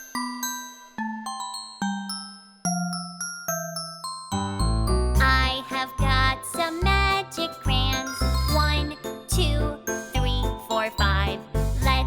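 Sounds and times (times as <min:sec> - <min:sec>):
upbeat children's song: 0:04.4 - 0:12.0.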